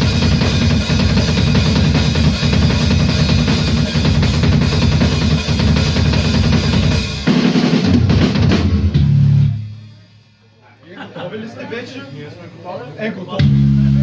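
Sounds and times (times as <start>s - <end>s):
fast metal drumming: 0.0s - 10.1s
held bass and guitar chord: 13.4s - 14.0s.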